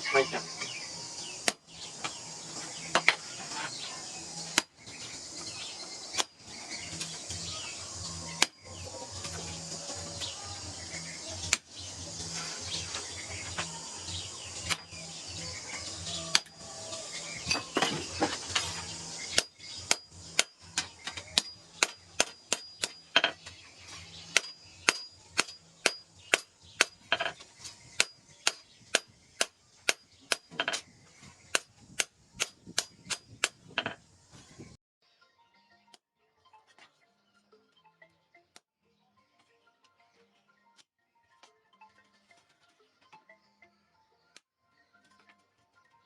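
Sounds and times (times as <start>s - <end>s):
hammer striking steel on anvil: 8.4s - 8.6s, 19.2s - 23.5s, 24.3s - 27.4s.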